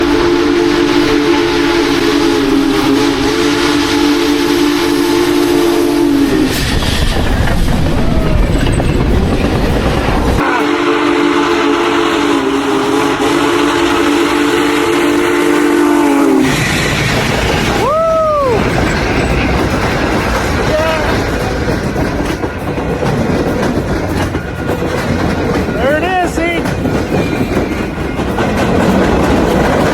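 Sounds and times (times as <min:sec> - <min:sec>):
steam locomotive chime whistle: 0:00.0 - 0:07.0, 0:10.4 - 0:17.0
train rumble and rail noise: 0:00.0 - 0:29.9.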